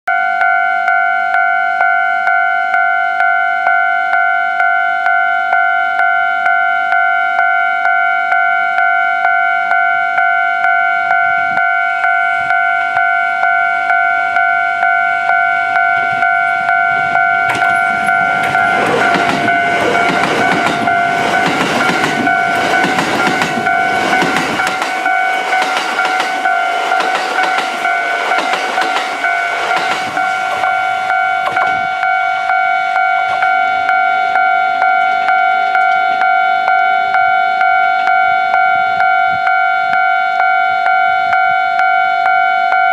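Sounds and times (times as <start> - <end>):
level crossing bell dinging: 0.1 - 42.9
train wheels clacking: 17.1 - 32.2.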